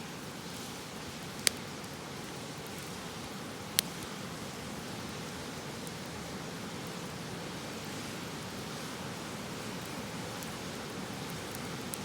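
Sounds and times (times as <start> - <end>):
campfire crackle: 0.0 - 12.0.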